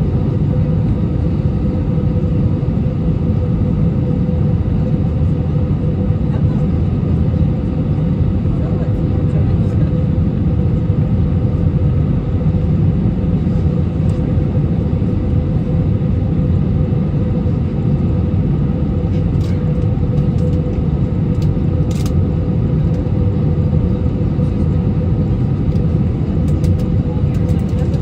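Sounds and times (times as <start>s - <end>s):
airliner cabin engine rumble: 0.0s - 28.0s
constant hum: 0.0s - 28.0s.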